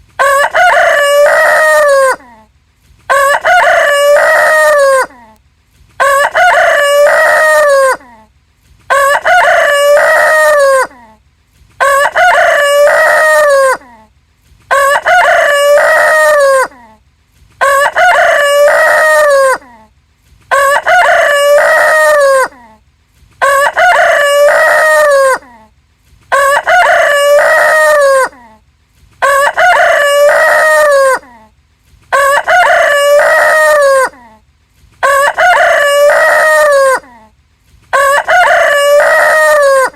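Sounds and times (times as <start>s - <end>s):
rooster crowing: 0.2s - 2.3s, 3.1s - 5.2s, 6.0s - 8.0s, 8.9s - 10.9s, 11.8s - 13.9s, 14.7s - 16.7s, 17.6s - 19.7s, 20.5s - 22.6s, 23.4s - 25.5s, 26.3s - 28.4s, 29.2s - 31.3s, 32.1s - 34.2s, 35.0s - 37.1s, 37.9s - 39.9s.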